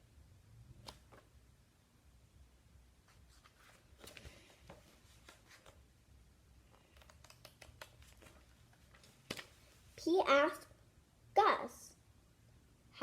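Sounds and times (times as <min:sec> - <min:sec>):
faint room hum: 0:00.0 - 0:13.0
soft clicks and rustles: 0:03.0 - 0:05.8, 0:06.6 - 0:09.9.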